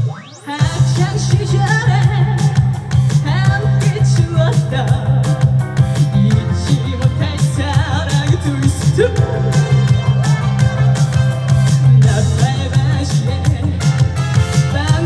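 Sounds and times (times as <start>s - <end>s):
band playing with heavy bass: 0.0s - 15.0s
steady drum beat: 0.6s - 15.0s
vibrato melody line: 6.5s - 13.1s.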